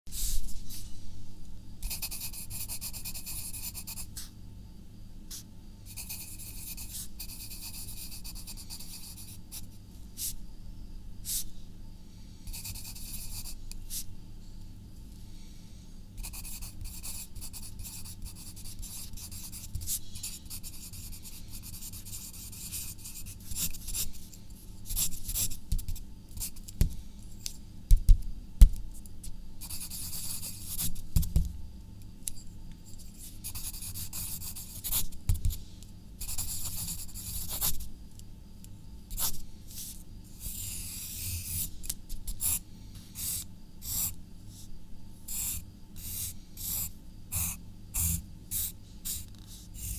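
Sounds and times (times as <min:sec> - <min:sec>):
pen scratching on paper: 0:16.2 - 0:24.2, 0:33.4 - 0:35.5, 0:36.2 - 0:37.8, 0:39.1 - 0:41.7, 0:42.3 - 0:42.6, 0:43.2 - 0:44.7, 0:45.3 - 0:49.9.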